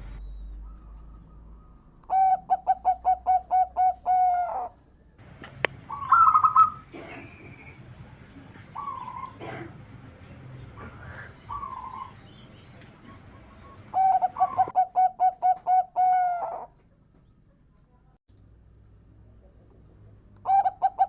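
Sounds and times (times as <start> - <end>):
dove cooing: 0.1 - 4.8, 5.5 - 16.8, 20.4 - 21.0
bird warbling trill: 5.8 - 7.8, 11.1 - 16.6.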